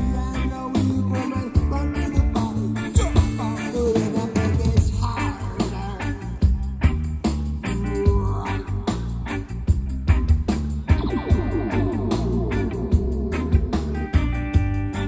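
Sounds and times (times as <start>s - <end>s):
person singing: 0.0s - 6.7s, 7.7s - 9.3s
bass line: 0.0s - 15.0s
guitar: 0.0s - 15.0s
drum hits: 10.9s - 14.9s.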